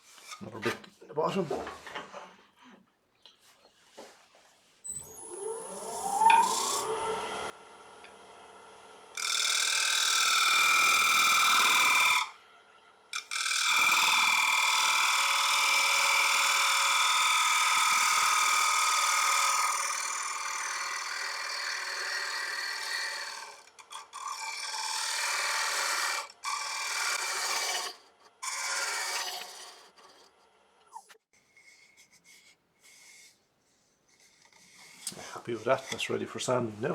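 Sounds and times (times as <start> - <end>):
wood lathe whining: 4.9 - 12.4, 13.2 - 31.0
gouge cutting wooden bowl: 13.2 - 30.3.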